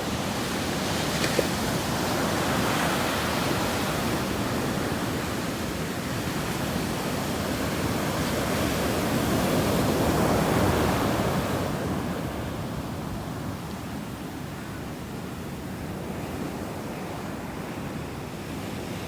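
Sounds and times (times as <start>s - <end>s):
waves breaking on beach: 0.0s - 13.6s.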